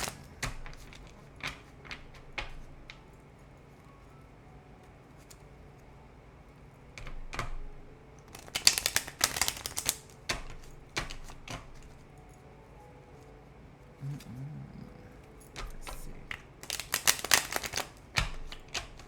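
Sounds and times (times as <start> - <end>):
cards shuffling and snapping: 0.0 - 3.1, 8.3 - 12.0, 15.6 - 19.0.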